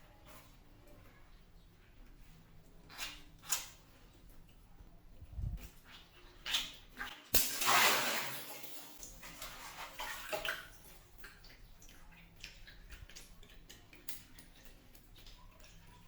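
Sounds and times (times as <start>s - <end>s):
water dripping: 5.8s - 16.0s
water balloon bursting: 7.4s - 8.7s
water splashing: 7.4s - 13.8s.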